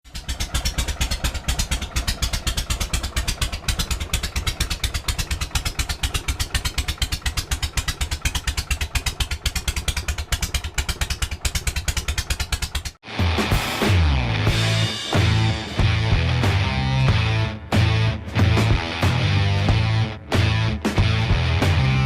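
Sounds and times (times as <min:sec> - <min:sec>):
motorcycle engine idling: 0:00.0 - 0:13.0, 0:14.2 - 0:22.0.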